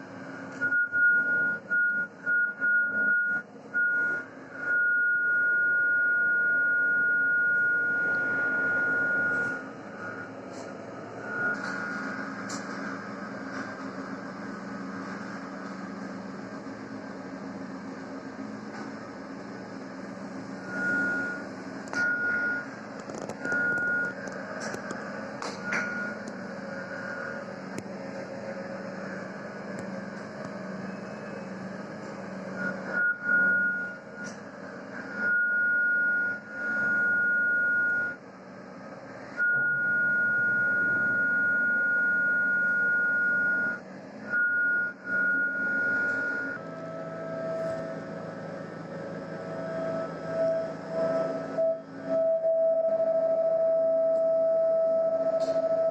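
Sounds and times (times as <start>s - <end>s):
low hum: 0.0s - 55.9s
machine-like rumble: 0.0s - 55.9s
high steady beeping tone: 0.6s - 10.4s, 20.6s - 22.7s, 25.6s - 27.6s, 32.5s - 34.4s, 35.1s - 38.2s, 39.4s - 48.3s, 49.1s - 55.9s.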